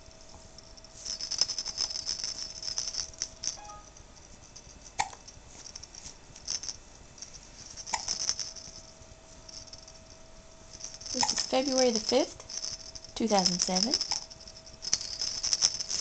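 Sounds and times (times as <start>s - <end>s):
baby toys rattling: 1.0s - 3.8s, 7.6s - 8.8s, 10.7s - 16.0s.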